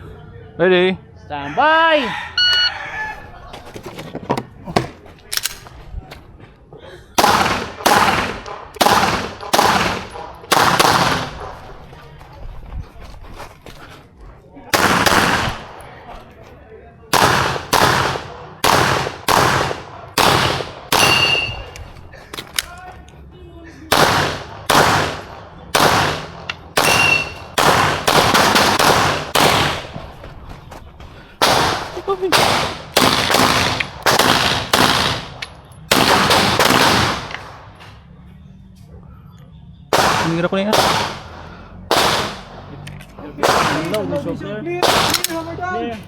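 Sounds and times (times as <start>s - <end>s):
pistol shots with echo: 7.2s - 11.6s, 14.7s - 15.8s, 17.1s - 21.8s, 23.9s - 30.0s, 31.4s - 37.7s, 39.9s - 42.6s, 43.4s - 44.1s, 44.8s - 45.4s.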